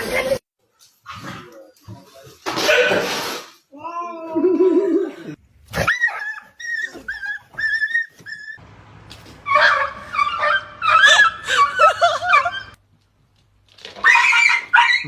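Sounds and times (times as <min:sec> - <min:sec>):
dog whining and yelping: 0:05.8 - 0:08.6, 0:09.5 - 0:12.8.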